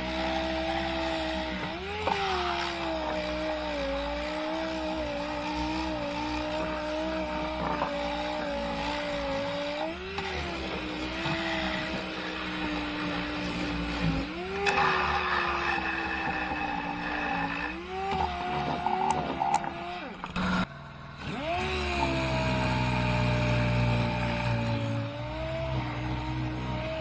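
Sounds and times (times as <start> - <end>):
power sander on wood: 0.0 - 27.0.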